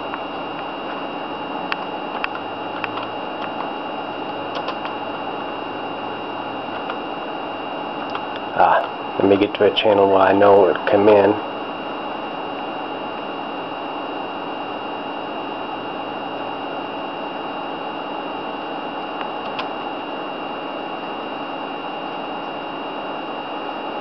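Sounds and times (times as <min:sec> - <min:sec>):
faint high whine: 0:00.0 - 0:24.0
small click: 0:19.2 - 0:19.7.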